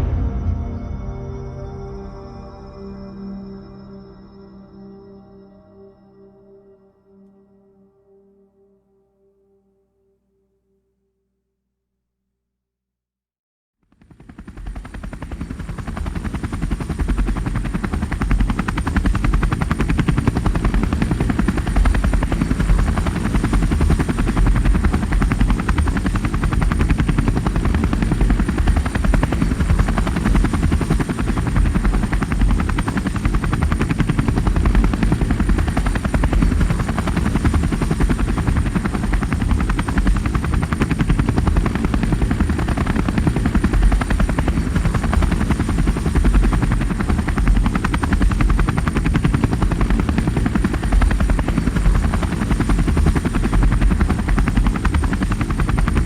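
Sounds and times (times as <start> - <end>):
helicopter rotor chopping: 14.0 - 56.0.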